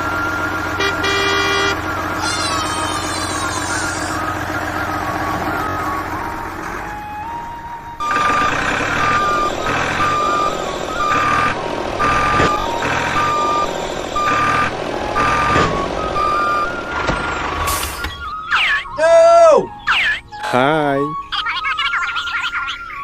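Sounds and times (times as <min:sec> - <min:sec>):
reversing alarm beeping: 0:00.0 - 0:01.8, 0:05.1 - 0:19.0
low motor rumble: 0:00.0 - 0:18.5.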